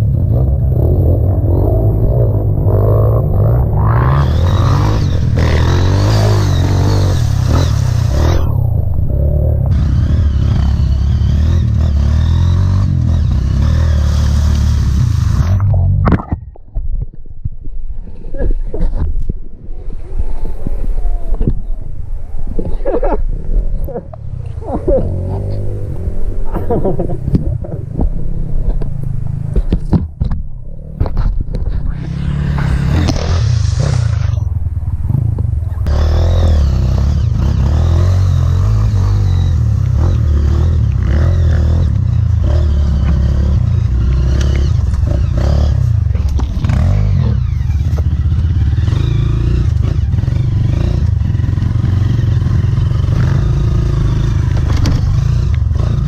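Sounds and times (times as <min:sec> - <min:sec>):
motorcycle engine running: 0:00.0 - 0:16.0, 0:31.9 - 0:56.0.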